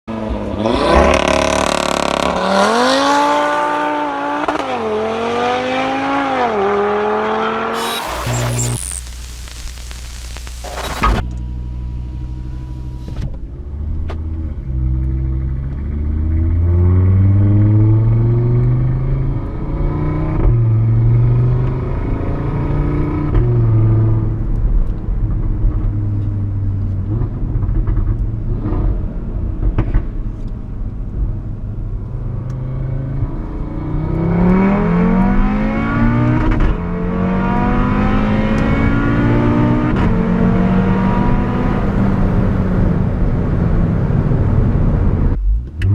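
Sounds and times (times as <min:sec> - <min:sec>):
car engine accelerating hard: 0:00.1 - 0:08.8.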